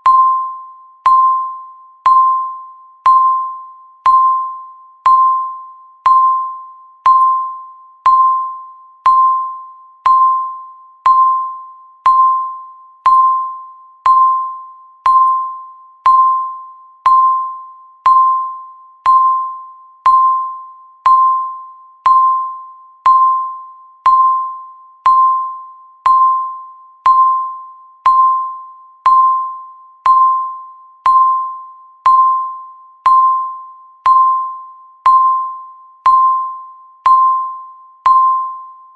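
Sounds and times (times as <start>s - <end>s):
countdown timer beeps: 0.0s - 38.9s.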